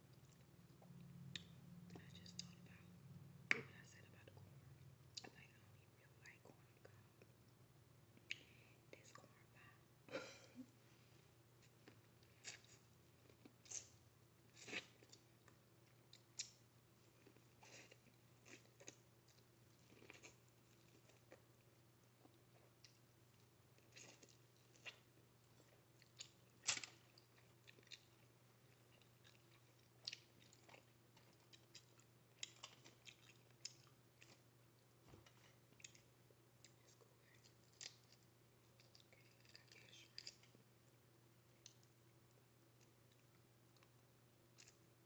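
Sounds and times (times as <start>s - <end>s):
faint low hum: 0.0s - 45.0s
chewing and mouth sounds: 11.6s - 44.8s.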